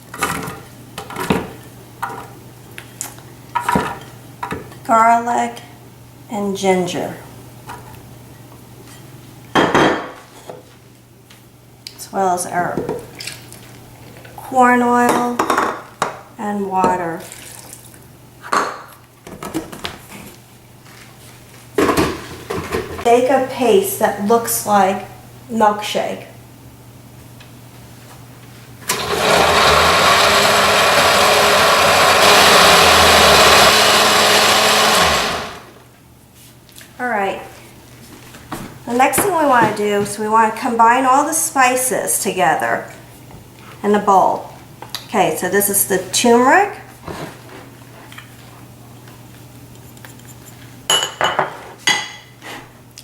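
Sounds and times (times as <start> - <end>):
electric blender running: 28.8 - 35.8.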